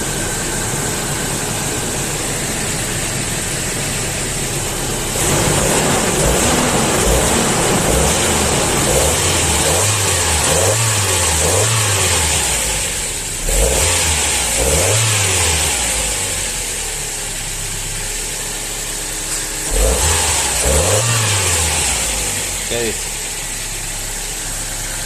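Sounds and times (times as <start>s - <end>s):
car engine revving: 0.0s - 25.0s.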